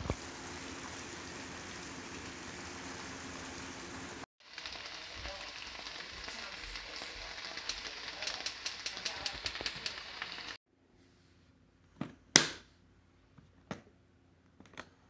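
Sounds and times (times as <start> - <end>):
crackling hiss: 0.0 - 10.6.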